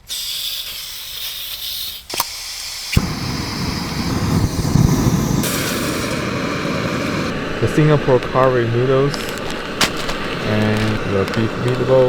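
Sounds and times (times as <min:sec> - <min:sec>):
gas hissing: 0:00.0 - 0:12.0
burner igniting pop: 0:00.1 - 0:12.0
stove igniter click: 0:02.1 - 0:07.3.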